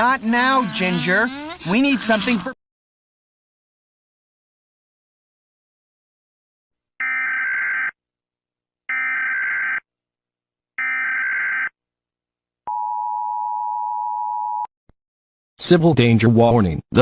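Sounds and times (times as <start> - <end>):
digital header data bursts: 0.0 - 2.5.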